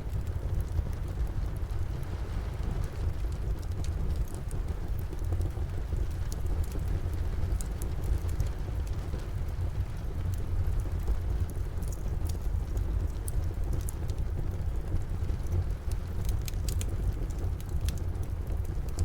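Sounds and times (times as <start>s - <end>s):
fire crackling and popping: 0.0s - 19.0s
steady rain falling: 0.0s - 19.0s.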